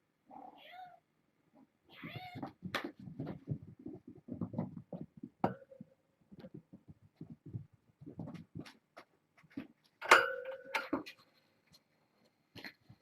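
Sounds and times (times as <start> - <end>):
kitten meowing: 0.4 - 1.0, 1.9 - 2.5
irregular clicks and scratches: 2.0 - 10.1.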